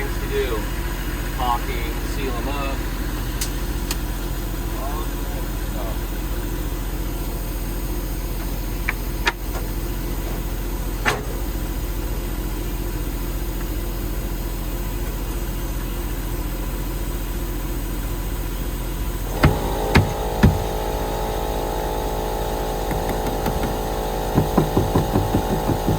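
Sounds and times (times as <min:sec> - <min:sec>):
engine running steadily: 0:00.0 - 0:25.9
sharp knocks: 0:19.3 - 0:20.8, 0:22.9 - 0:25.9.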